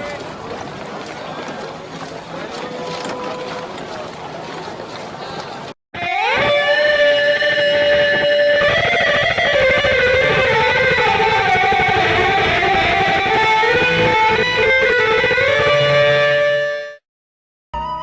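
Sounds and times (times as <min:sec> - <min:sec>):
electric guitar slow lead melody: 0:06.0 - 0:17.0.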